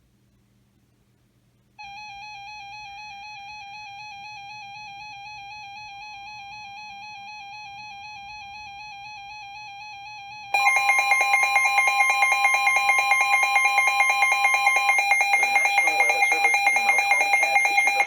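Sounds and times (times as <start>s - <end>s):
pulsing alarm beeps: 10.6s - 18.0s
steady warning tone: 10.6s - 18.0s.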